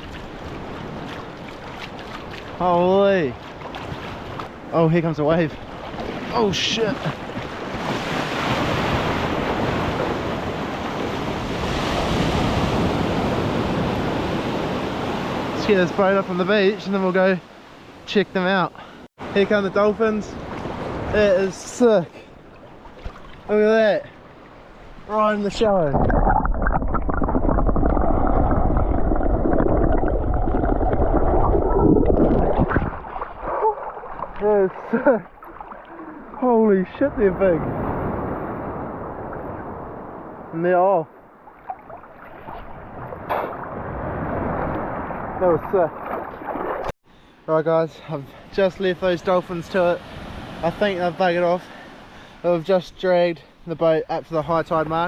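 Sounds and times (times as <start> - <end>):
underwater rush and gurgle: 0.0 - 2.7, 22.3 - 36.5, 41.3 - 46.9
surf washing up beach: 0.0 - 25.9, 48.5 - 52.8.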